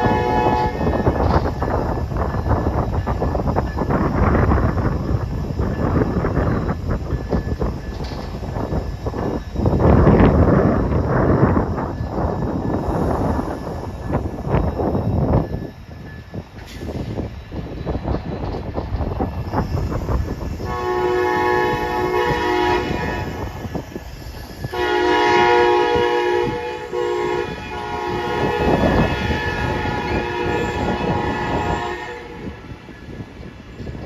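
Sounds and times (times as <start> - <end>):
train air horn blasts: 0.0 - 1.3, 20.5 - 23.8, 24.7 - 32.9
wind buffeting microphone: 0.0 - 34.0.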